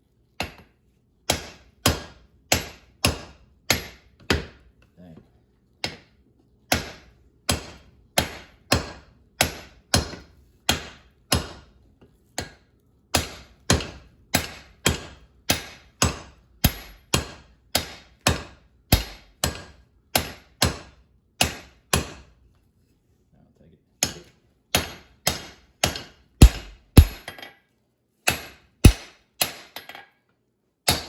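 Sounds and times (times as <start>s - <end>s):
hammer striking hot steel on anvil: 16.7s - 17.0s, 26.4s - 27.2s, 28.8s - 29.0s.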